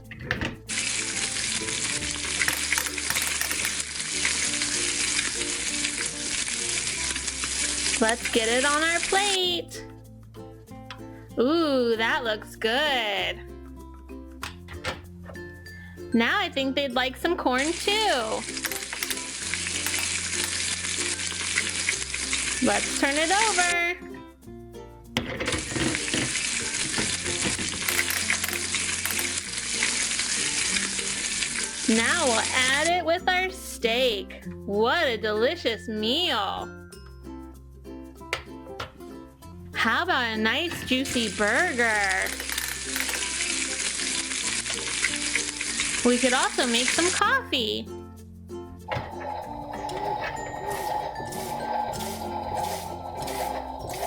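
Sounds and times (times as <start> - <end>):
frying sizzle: 0.7 - 9.4, 17.6 - 23.8, 25.6 - 32.8, 41.2 - 47.2, 49.1 - 54.0.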